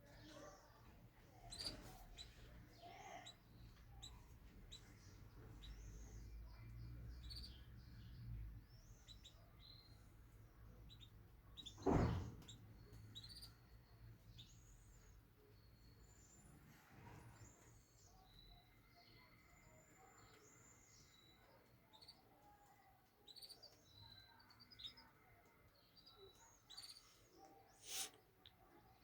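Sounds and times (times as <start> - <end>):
canaries chirping: 0.0 - 28.1
loud knock: 11.8 - 12.5.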